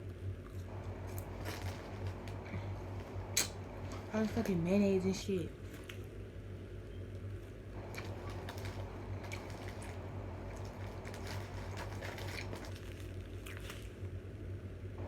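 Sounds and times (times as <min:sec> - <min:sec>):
low electrical hum: 0:00.0 - 0:15.0
person chewing wetly: 0:07.8 - 0:14.2.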